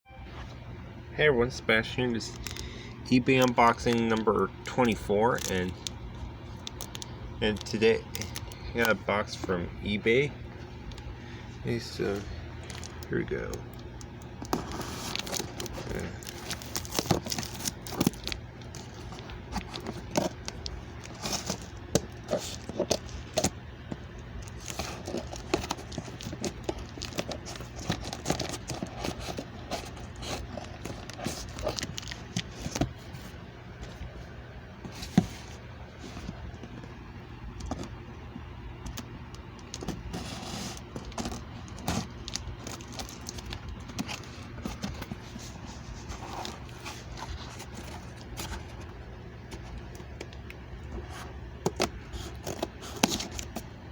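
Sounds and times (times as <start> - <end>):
packing material crinkling: 2.2 - 9.6, 11.7 - 38.2, 38.8 - 53.9
cardboard box being unpacked: 14.3 - 34.2, 34.8 - 36.9, 39.4 - 53.9.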